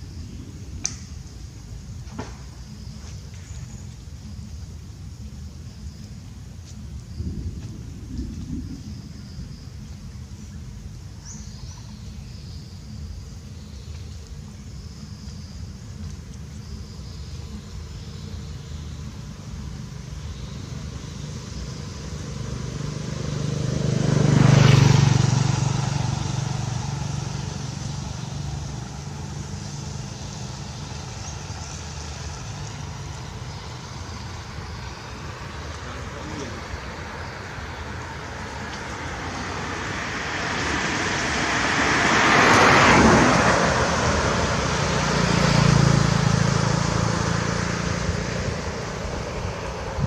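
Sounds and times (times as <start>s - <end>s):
steady low rumble: 0.0s - 23.4s, 25.6s - 41.6s
vehicle driving past: 16.6s - 50.0s.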